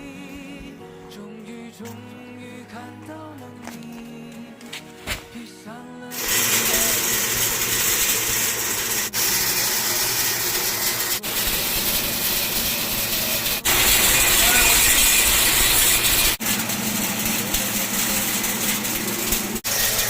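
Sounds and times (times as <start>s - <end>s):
background music: 0.0s - 7.2s
winnowing machine air rush: 6.1s - 20.0s
mechanical rattle: 6.2s - 20.0s.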